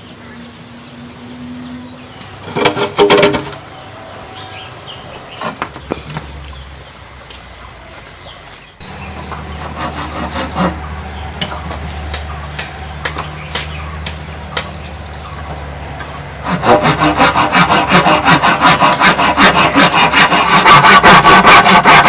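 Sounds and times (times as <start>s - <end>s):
steady low hum: 0.0s - 20.6s
bamboo poles knocking: 2.5s - 3.6s, 9.2s - 22.0s.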